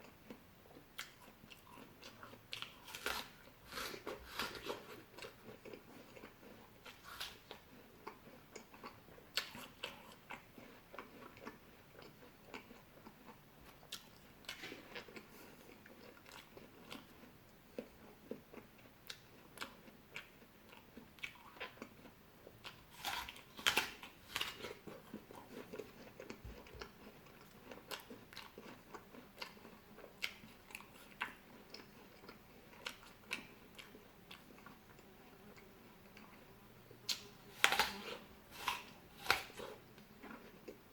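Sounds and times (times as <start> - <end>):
person chewing crunchy fruit: 0.0 - 40.9.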